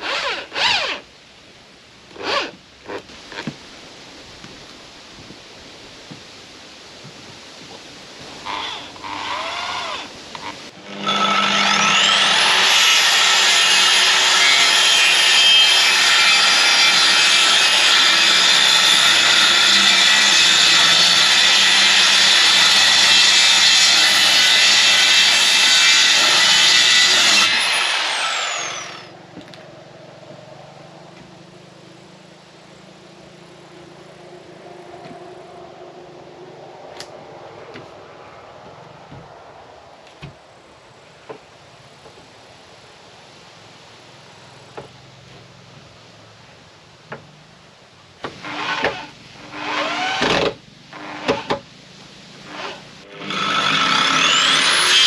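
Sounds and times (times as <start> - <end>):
power tool running: 10.8 - 29.1, 52.4 - 55.0.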